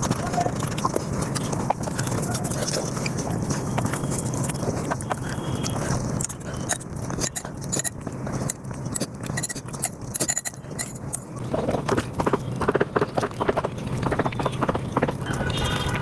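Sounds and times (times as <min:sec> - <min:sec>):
sped-up eating sounds: 0:00.0 - 0:16.0.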